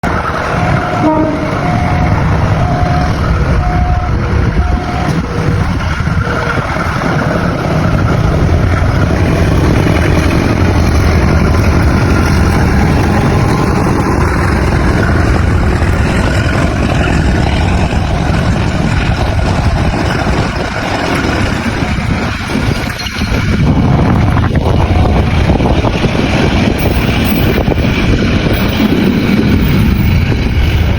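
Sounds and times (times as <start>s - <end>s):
train wheels rumbling: 0.0s - 30.9s
train horn notes: 0.6s - 3.0s.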